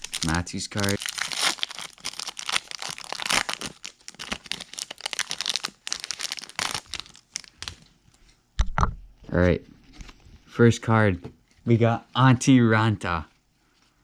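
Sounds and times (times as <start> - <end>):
wrapper tearing and crackling: 0.0 - 7.8.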